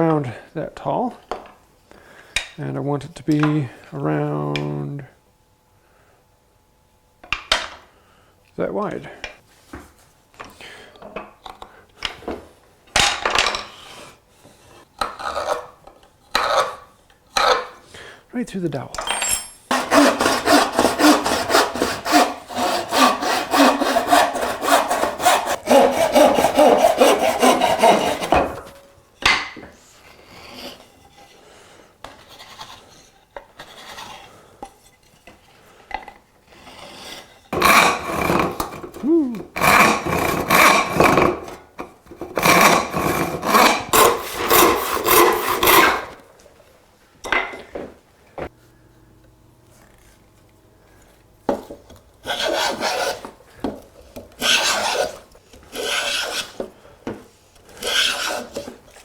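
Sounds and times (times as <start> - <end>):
hand saw cutting wood: 15.0 - 17.8, 19.7 - 28.8, 30.0 - 31.4, 32.0 - 34.5, 36.5 - 46.2, 51.7 - 56.8, 57.7 - 59.0.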